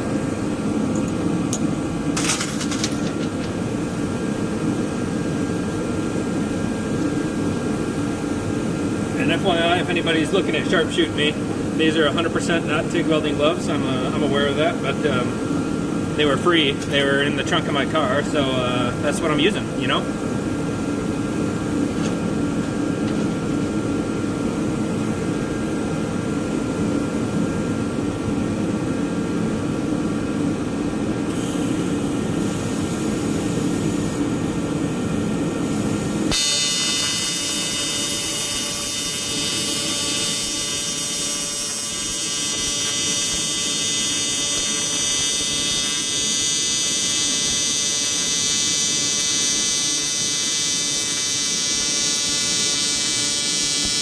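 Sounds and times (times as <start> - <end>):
welding arc buzzing: 0.0 - 13.0, 31.3 - 54.0
steady low hum: 0.0 - 54.0.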